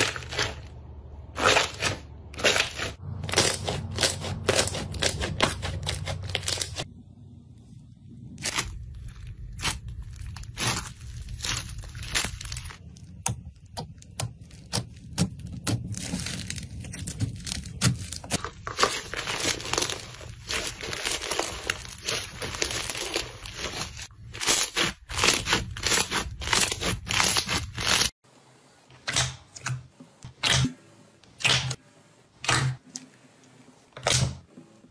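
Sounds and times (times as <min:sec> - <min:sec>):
slime squeezed crackling and popping: 0:08.4 - 0:28.1.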